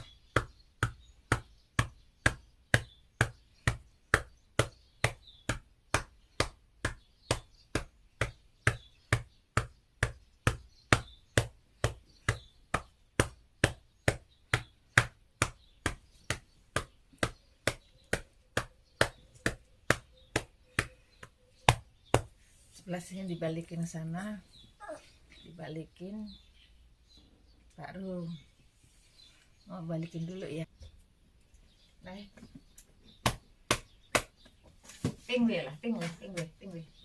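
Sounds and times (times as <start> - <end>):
hand patting on a back: 0.0 - 22.5.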